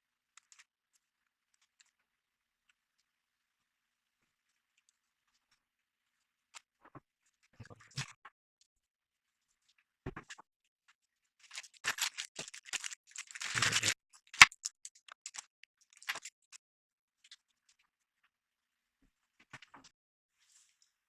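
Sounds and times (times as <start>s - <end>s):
small clicks and scrapes: 0.3s - 3.2s, 4.1s - 16.6s, 17.2s - 18.4s.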